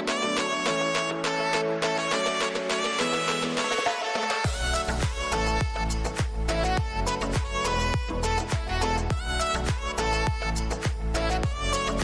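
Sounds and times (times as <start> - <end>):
upbeat background music: 0.0 - 12.0
kick drum: 4.4 - 11.8.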